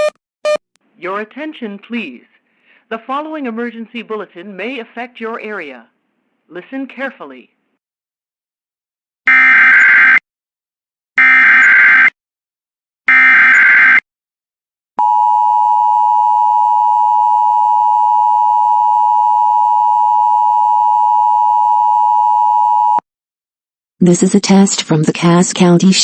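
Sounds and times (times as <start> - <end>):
two-tone attention signal: 0.0 - 0.6.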